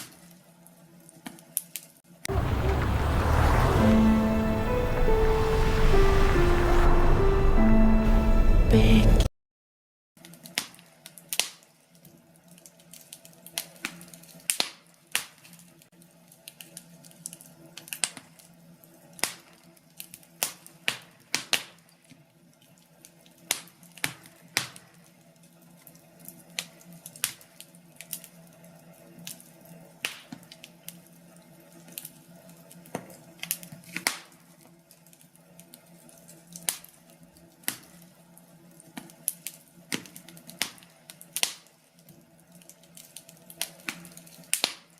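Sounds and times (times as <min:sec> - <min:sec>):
wood fire crackling and popping: 0:12.5 - 0:15.6, 0:38.8 - 0:44.9.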